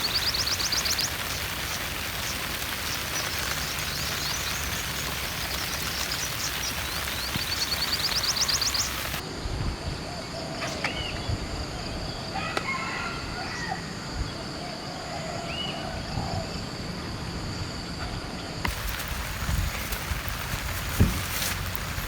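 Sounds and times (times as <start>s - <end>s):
high insect drone: 0.0s - 9.2s
roosters crowing: 12.3s - 14.0s.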